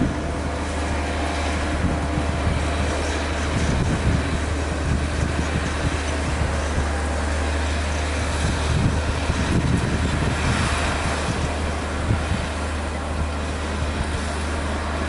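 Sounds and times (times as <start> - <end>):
continuous mechanical noise: 0.0 - 15.0
low engine drone: 0.0 - 15.0.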